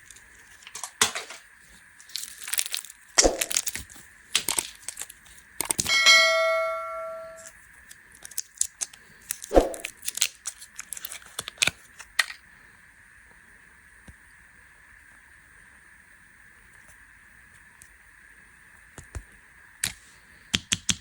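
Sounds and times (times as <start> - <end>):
candy packaging crinkling and tearing: 0.0 - 5.9, 7.7 - 12.4
ringing note: 5.9 - 7.5.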